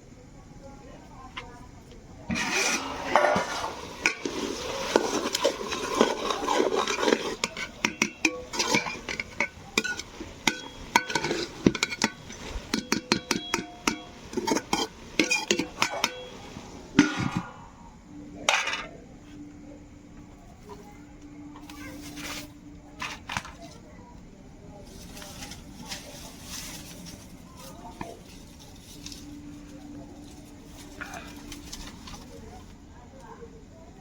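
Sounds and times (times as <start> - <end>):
metal utensils clinking on pot: 2.3 - 17.5, 18.5 - 19.0.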